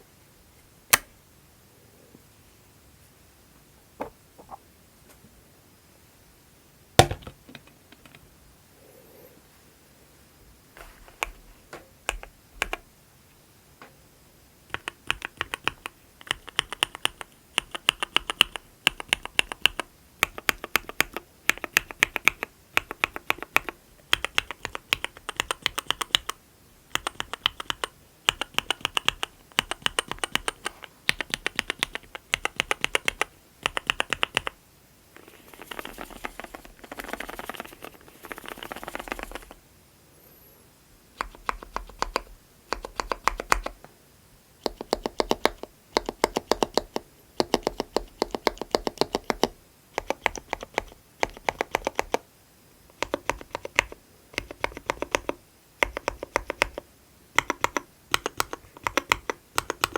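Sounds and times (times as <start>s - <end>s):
typing on mechanical keyboard: 12.0s - 12.8s, 14.7s - 34.6s, 35.2s - 39.6s, 41.2s - 43.8s, 44.6s - 52.2s, 52.9s - 59.9s.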